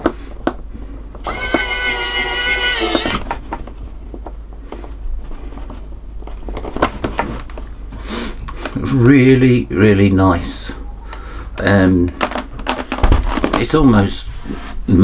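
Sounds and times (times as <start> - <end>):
electric screwdriver whirring: 1.2 - 3.2.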